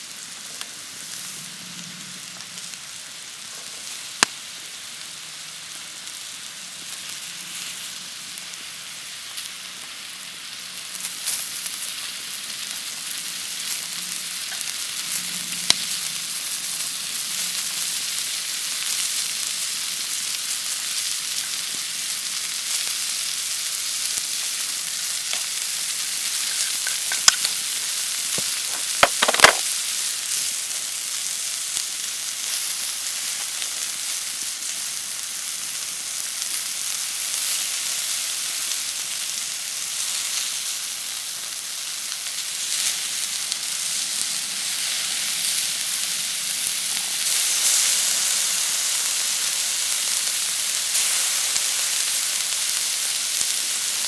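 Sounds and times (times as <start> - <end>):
steady rain hiss: 21.5 - 29.6
sharp clicks: 26.5 - 27.6.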